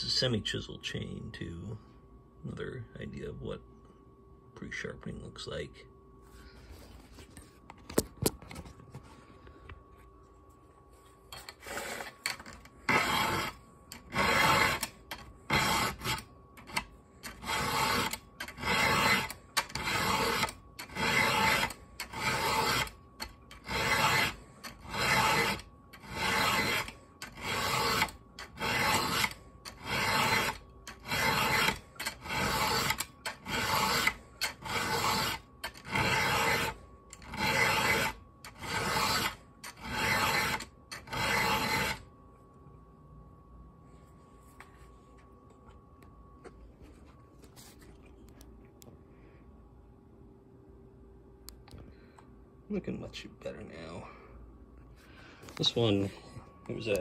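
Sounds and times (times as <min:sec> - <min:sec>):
file rasping on chain: 0:11.6 - 0:12.2, 0:12.9 - 0:42.0.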